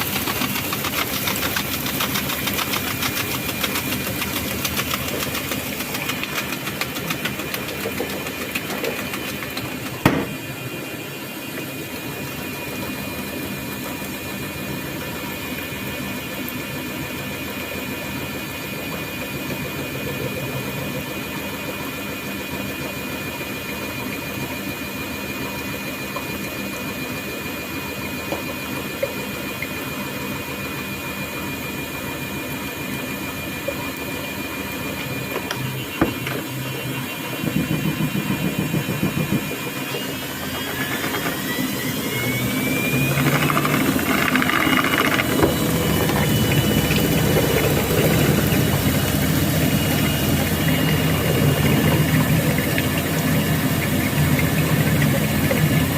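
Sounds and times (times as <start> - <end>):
washing machine hum: 0.0 - 55.9.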